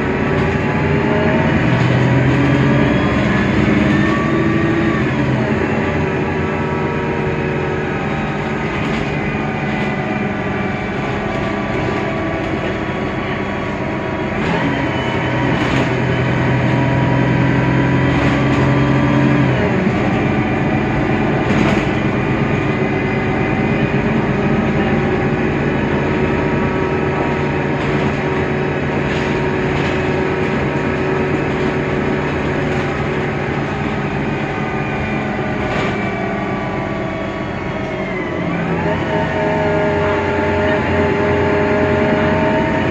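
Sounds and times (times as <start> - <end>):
bus diesel engine running: 0.0 - 42.9
gearbox whining: 0.0 - 42.9
knocks and rattles: 21.4 - 22.2, 27.0 - 34.3.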